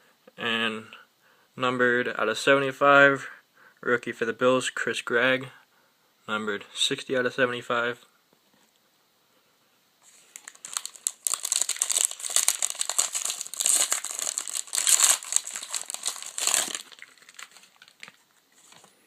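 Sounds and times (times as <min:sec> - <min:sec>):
wrapper being torn and crinkled: 0:10.3 - 0:18.2.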